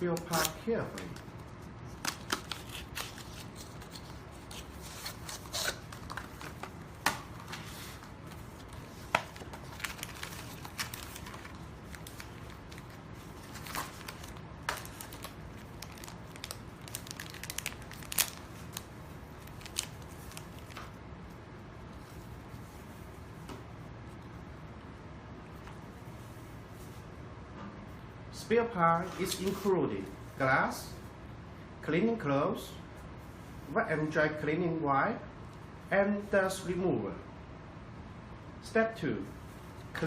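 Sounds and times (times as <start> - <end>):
package rustling and crinkling: 0.5 - 20.9.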